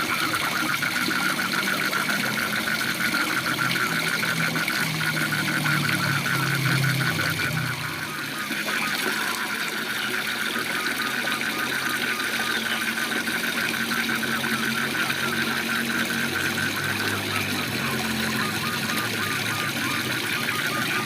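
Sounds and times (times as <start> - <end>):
frogs croaking: 0.0 - 21.0.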